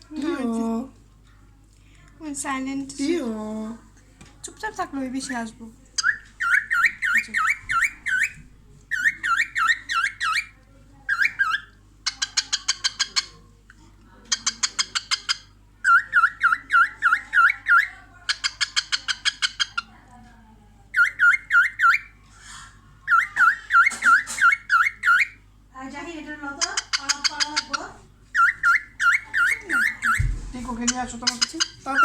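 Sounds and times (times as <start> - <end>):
cockatiel chirping and chattering: 6.0 - 13.4, 14.3 - 19.9, 20.9 - 22.2, 23.1 - 25.4, 26.5 - 32.0.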